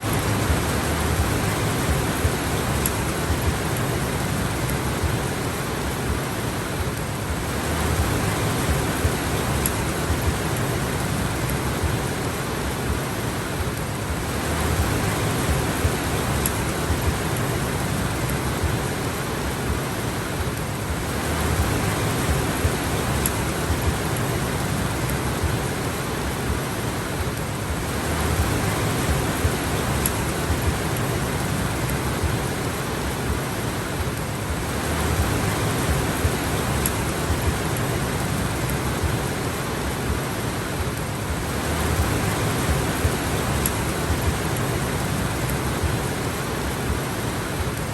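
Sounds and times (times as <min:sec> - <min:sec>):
heavy rain falling: 0:00.0 - 0:47.9.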